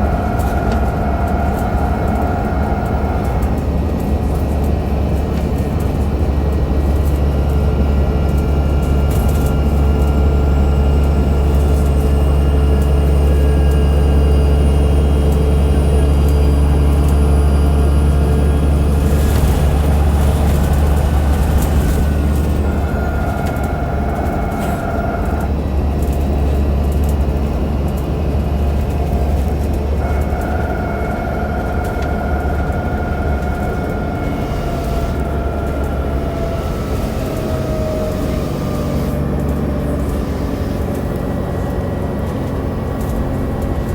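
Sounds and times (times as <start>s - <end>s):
thin whining from drive axle: 0.0s - 5.6s, 6.3s - 43.9s
bus diesel engine drone: 0.0s - 43.9s.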